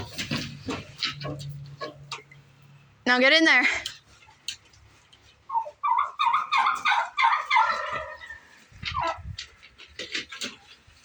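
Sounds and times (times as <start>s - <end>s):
turkey gobbling: 5.3s - 9.2s.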